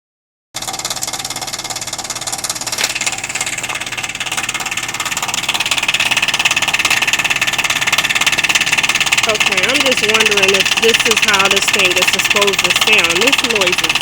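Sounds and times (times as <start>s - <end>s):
heat pump pulsing buzz: 0.6s - 14.0s.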